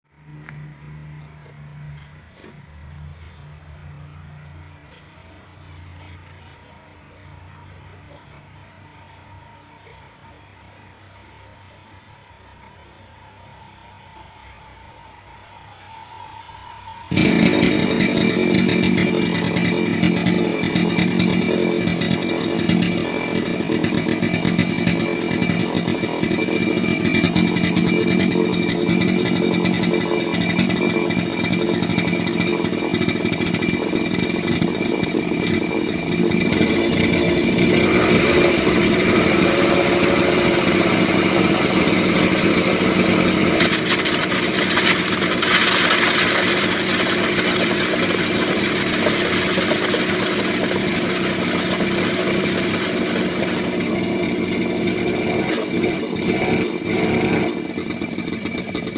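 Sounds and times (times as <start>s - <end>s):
two-stroke engine running: 17.1s - 58.9s.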